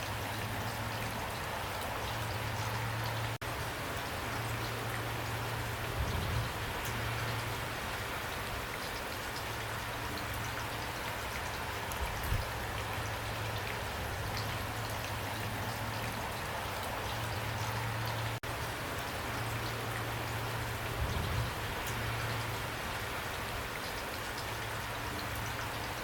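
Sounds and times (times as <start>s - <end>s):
steady rain: 0.0s - 26.0s.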